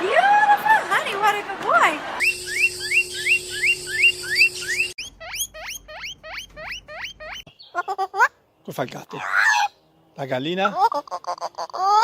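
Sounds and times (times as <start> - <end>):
parrot squeaky chirps: 2.2 - 8.3.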